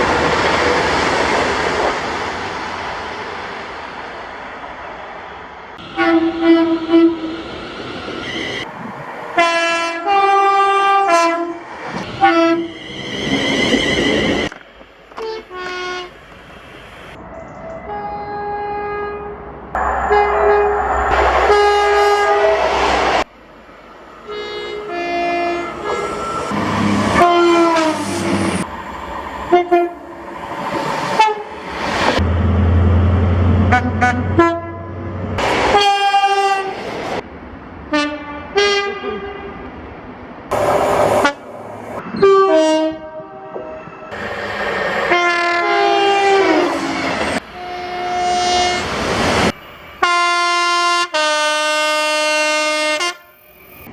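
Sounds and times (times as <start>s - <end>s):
rumble of passing trains: 0.0s - 53.9s
train horn chord blasts: 17.9s - 22.9s, 45.1s - 46.9s.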